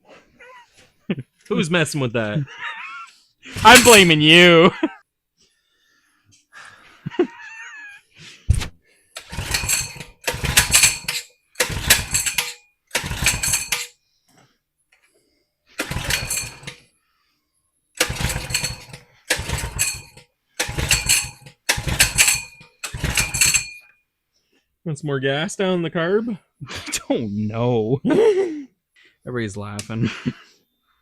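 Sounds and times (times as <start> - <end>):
small engine cranking on pull starter: 9.2 - 13.9, 15.8 - 16.8, 18.0 - 23.8.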